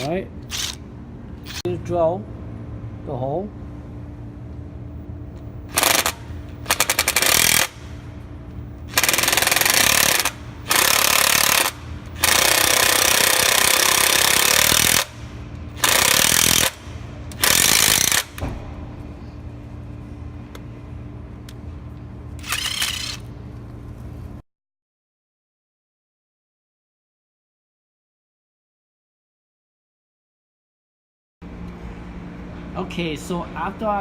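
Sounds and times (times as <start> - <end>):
power drill drilling metal: 0.0 - 0.8, 8.9 - 15.1, 15.8 - 16.8, 17.4 - 18.4, 22.4 - 23.2
steady low hum: 0.0 - 24.4, 31.4 - 34.0.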